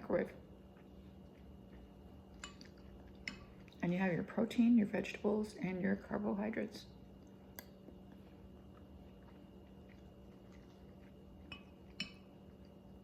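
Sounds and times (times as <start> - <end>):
steady low hum: 0.0 - 13.0
faint chewing: 0.2 - 4.4, 7.0 - 13.0
utensil clicking on dish: 2.4 - 3.5, 11.5 - 12.3.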